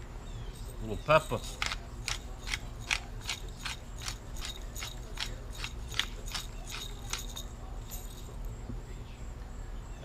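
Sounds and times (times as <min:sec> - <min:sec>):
pepper mill ratcheting clicks: 0:01.2 - 0:07.6.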